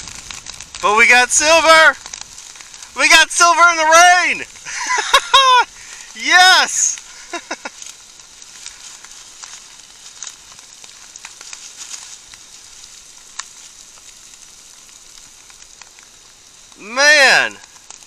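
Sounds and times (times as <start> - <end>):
heavy rain pouring: 0.0 - 18.0
rain drops ticking: 0.0 - 18.0.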